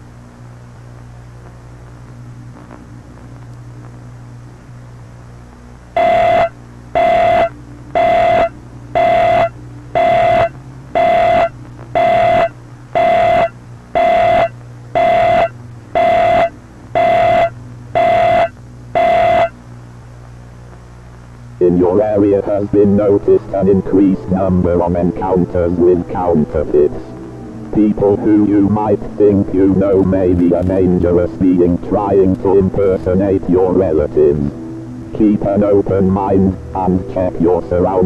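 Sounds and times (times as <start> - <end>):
low hum and hiss: 0.0 - 38.0
buzzy electronic beeps: 6.0 - 19.6.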